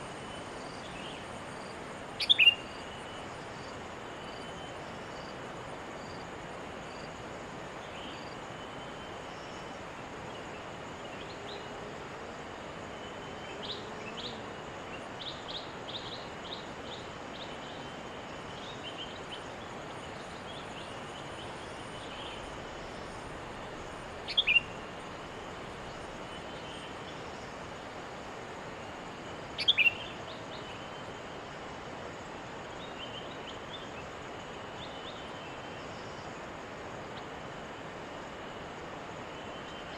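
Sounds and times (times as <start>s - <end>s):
steady background hiss: 0.0s - 39.9s
bird chirping: 2.2s - 3.2s, 23.7s - 25.2s, 29.6s - 31.0s.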